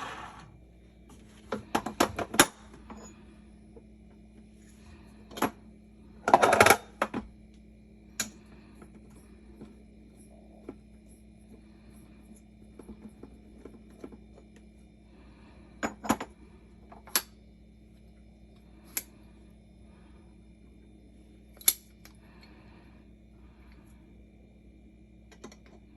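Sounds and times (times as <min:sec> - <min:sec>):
faint steady hum: 0:00.0 - 0:25.9
clicks and knocks of tools: 0:21.6 - 0:22.2, 0:25.3 - 0:25.9.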